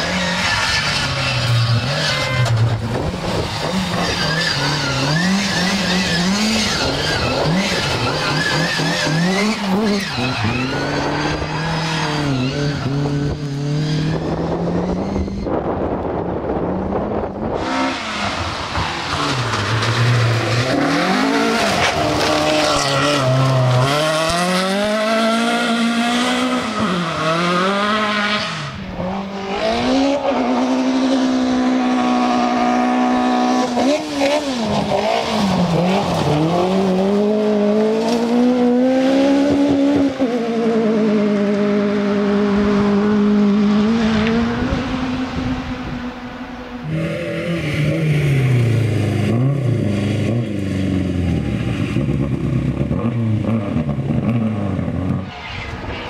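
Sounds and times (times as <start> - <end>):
tyre squeal and skidding: 0.0 - 15.7, 17.8 - 24.4, 25.2 - 28.8, 55.2 - 56.0
rally car engines revving: 0.0 - 56.0.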